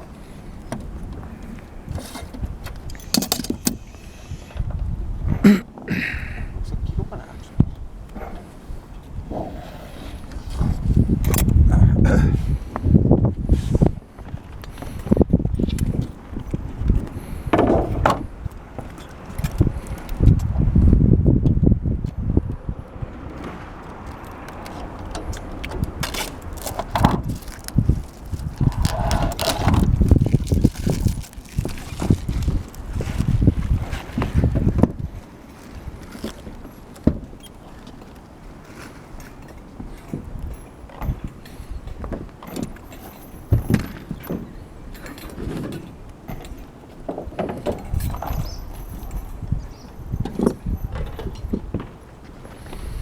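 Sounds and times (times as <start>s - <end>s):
wind rumbling on microphone: 0.0s - 37.5s, 38.4s - 53.0s
knocks and clanks on metal roof: 17.5s - 18.3s.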